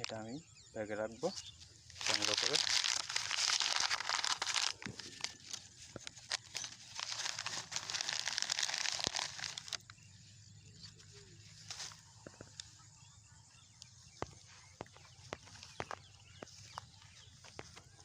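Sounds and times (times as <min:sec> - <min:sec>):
plastic bag rustling and crinkling: 0:01.9 - 0:10.1, 0:11.4 - 0:12.6.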